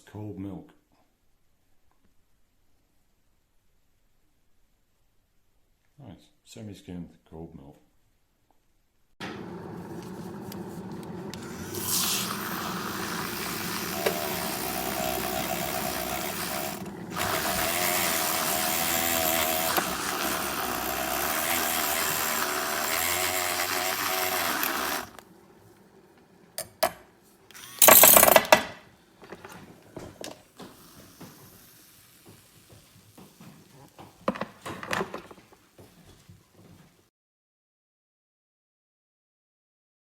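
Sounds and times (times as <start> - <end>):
milk frother motor whirring: 9.2 - 28.5, 30.6 - 32.8.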